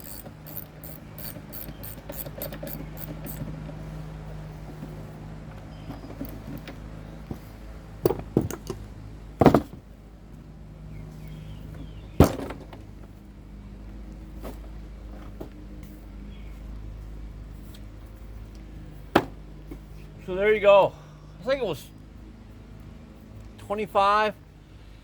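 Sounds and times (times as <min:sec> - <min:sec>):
knocks and clunks of tools: 0:00.0 - 0:03.4
steady low hum: 0:00.0 - 0:03.5.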